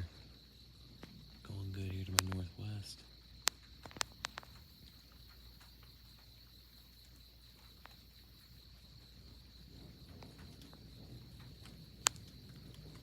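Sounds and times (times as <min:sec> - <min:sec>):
night insects trilling: 0:00.0 - 0:13.0
faint clicks: 0:01.0 - 0:02.5, 0:03.4 - 0:08.5, 0:10.0 - 0:13.0.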